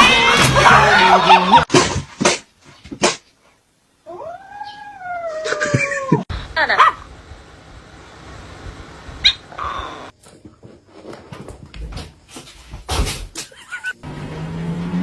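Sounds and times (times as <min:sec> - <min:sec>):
steady low hum: 0:06.3 - 0:10.1.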